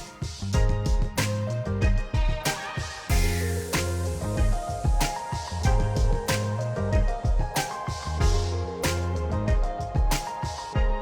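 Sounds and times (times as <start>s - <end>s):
upbeat soul-funk music: 0.0s - 11.0s.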